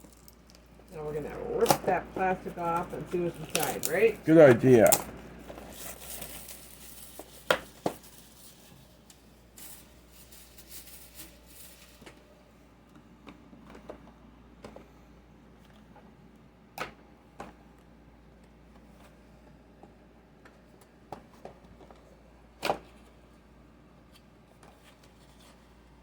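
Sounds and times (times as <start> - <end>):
plastic shrink-wrap tearing: 0.0 - 0.8, 2.8 - 12.0.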